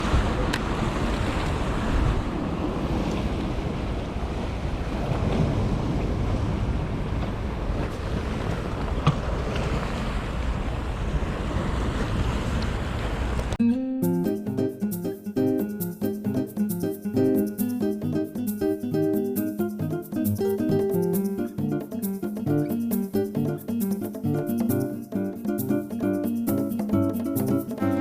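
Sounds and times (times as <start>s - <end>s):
wind buffeting microphone: 0.0s - 13.6s
sea waves: 0.0s - 28.0s.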